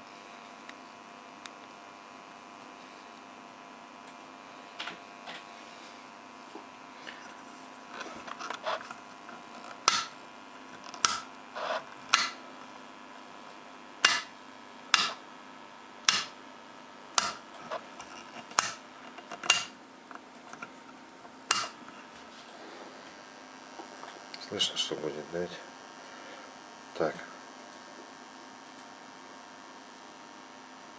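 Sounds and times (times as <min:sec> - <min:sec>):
battery charger transformer hum: 0:00.0 - 0:30.9
sharp clicks: 0:12.1 - 0:12.4.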